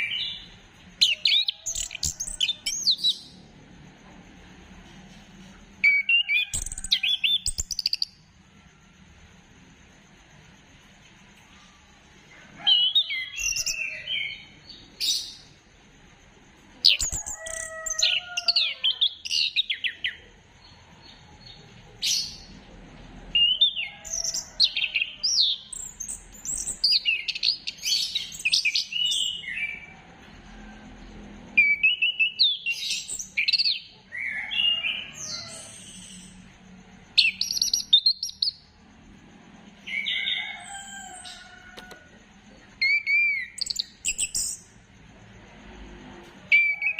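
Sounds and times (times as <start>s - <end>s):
thrush singing whistled phrases: 5.8s - 8.2s, 31.6s - 33.9s, 42.8s - 44.7s, 46.5s - 46.9s.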